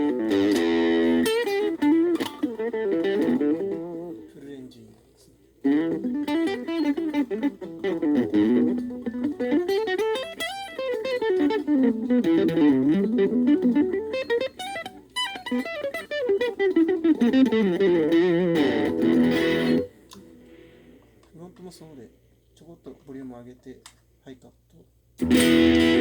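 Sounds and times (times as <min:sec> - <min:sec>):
electric guitar single-note runs: 0:00.0 - 0:04.1, 0:05.7 - 0:19.9, 0:25.2 - 0:26.0.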